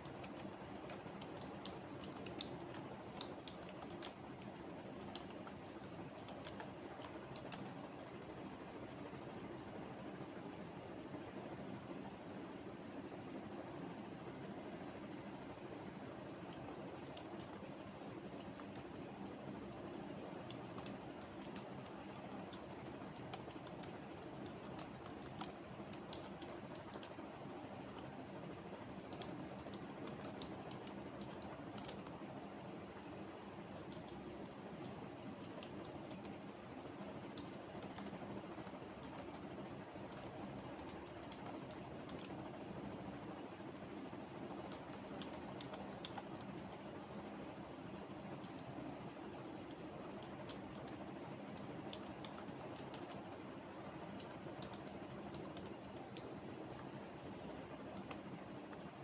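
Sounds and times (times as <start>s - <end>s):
keyboard typing: 0.0s - 8.9s, 16.5s - 17.7s, 20.4s - 27.3s, 29.0s - 32.2s, 33.0s - 36.5s, 37.2s - 42.6s, 44.4s - 46.8s, 48.2s - 48.8s, 49.4s - 56.4s
low background hum: 0.0s - 59.0s.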